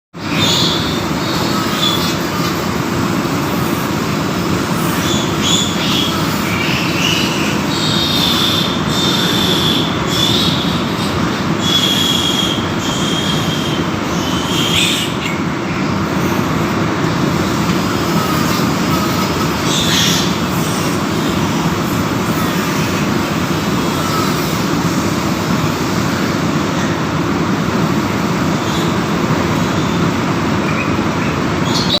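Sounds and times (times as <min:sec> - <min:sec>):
piglets squealing: 0:00.3 - 0:02.8, 0:04.6 - 0:15.4, 0:16.1 - 0:25.0.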